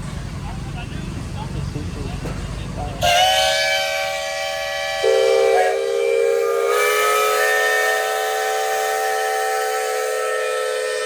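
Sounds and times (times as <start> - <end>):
steam hissing: 3.0 - 11.0
steam whistles blowing: 3.0 - 11.0.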